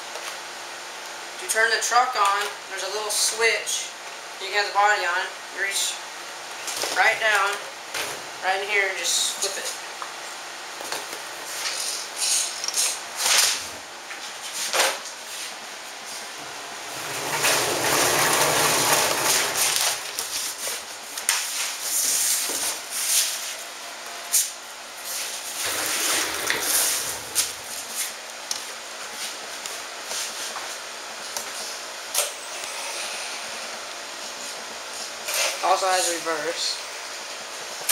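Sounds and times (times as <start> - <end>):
rc truck motor and tyres: 16.9 - 20.3, 25.6 - 27.8.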